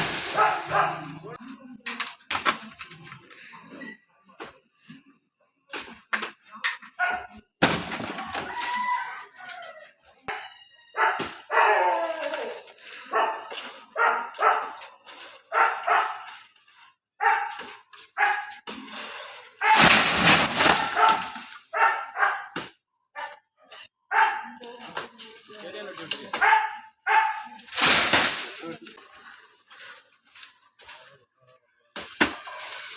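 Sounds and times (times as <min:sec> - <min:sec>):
dog barking: 0:00.2 - 0:01.3, 0:07.0 - 0:07.4, 0:10.9 - 0:11.9, 0:13.0 - 0:16.5, 0:17.2 - 0:18.6, 0:19.6 - 0:19.8, 0:20.7 - 0:24.6, 0:26.4 - 0:27.6.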